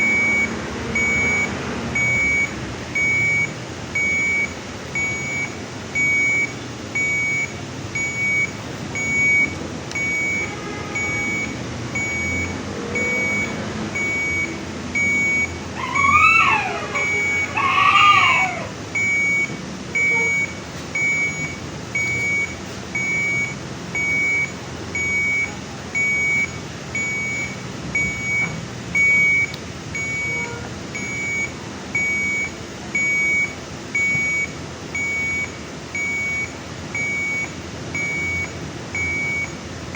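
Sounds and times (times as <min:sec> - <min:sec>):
monitor alarm beeping: 0:00.0 - 0:39.6
newborn crying: 0:15.8 - 0:18.8.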